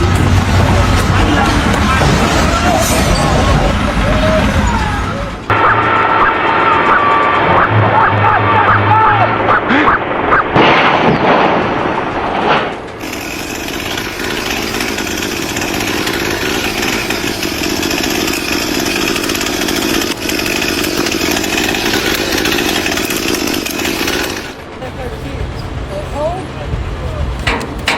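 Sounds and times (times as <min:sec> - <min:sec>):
power tool running: 0:12.9 - 0:25.6.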